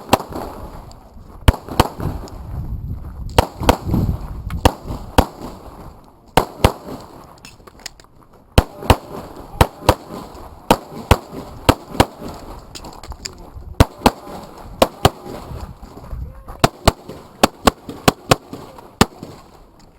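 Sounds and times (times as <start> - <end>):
pistol shots: 1.5 - 2.3, 3.4 - 4.0, 4.6 - 5.7, 6.4 - 7.3, 8.6 - 12.6, 13.8 - 15.7, 16.6 - 19.6.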